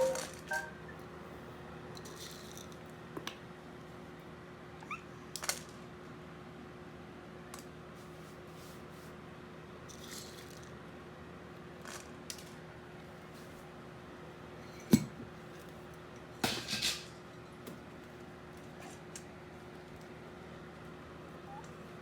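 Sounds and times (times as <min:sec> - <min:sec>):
high rising chirp: 0:00.0 - 0:00.9.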